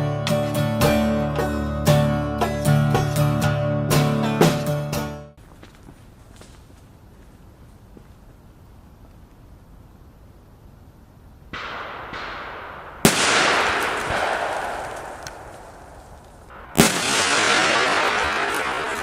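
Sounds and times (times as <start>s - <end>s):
firecracker blasts: 11.5s - 19.0s.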